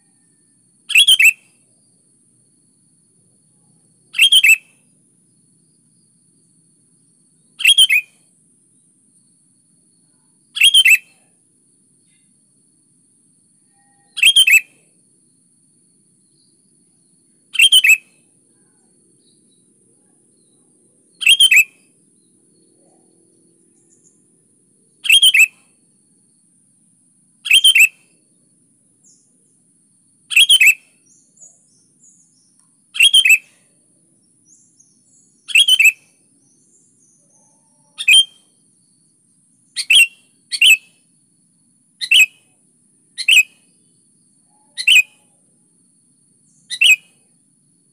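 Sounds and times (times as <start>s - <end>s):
bulbul singing: 0.9s - 1.4s, 4.2s - 4.7s, 7.6s - 8.1s, 10.6s - 11.2s, 13.7s - 14.7s, 17.5s - 18.0s, 21.2s - 21.8s, 25.0s - 25.6s, 27.4s - 27.9s, 30.3s - 33.6s, 34.2s - 39.0s, 39.6s - 41.0s, 42.0s - 42.6s, 43.2s - 45.3s, 46.4s - 47.2s.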